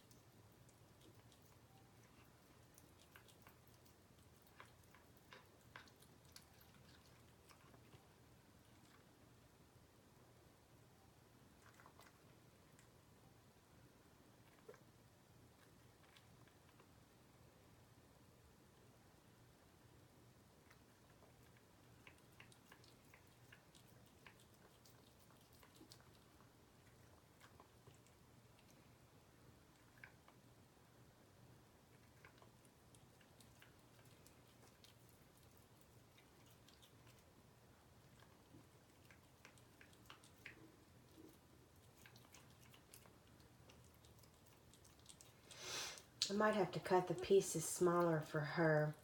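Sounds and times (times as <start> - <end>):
cat chewing wet clicks: 0.0 - 9.3, 20.5 - 30.5, 31.8 - 46.3
low room hum: 0.0 - 49.0.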